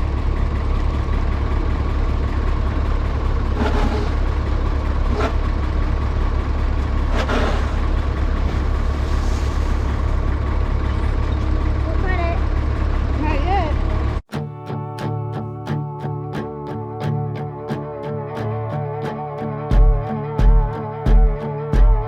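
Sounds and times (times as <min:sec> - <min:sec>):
diesel engine running steadily: 0:00.0 - 0:22.0
brief hissing: 0:08.9 - 0:10.0.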